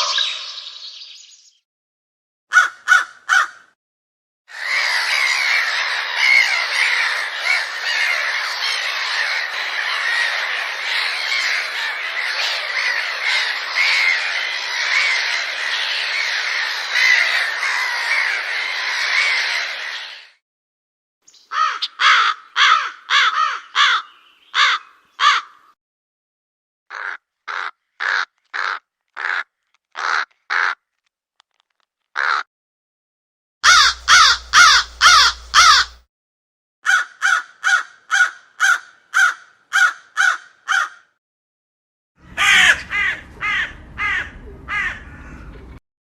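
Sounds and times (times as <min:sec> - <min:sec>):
crows cawing: 0:02.5 - 0:03.8, 0:04.5 - 0:20.2, 0:21.5 - 0:25.8, 0:26.9 - 0:30.8, 0:32.2 - 0:32.5, 0:33.6 - 0:36.0, 0:36.8 - 0:41.2, 0:42.3 - 0:45.5.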